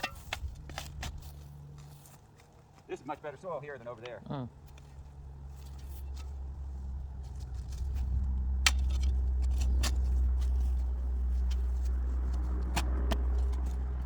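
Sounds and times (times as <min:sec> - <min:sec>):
engine running with low hum: 0:00.0 - 0:14.0.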